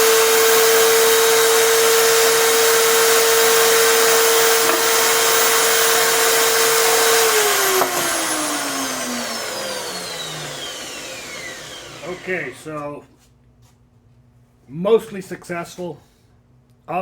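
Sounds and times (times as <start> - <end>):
electric drill whining: 0.0 - 12.8.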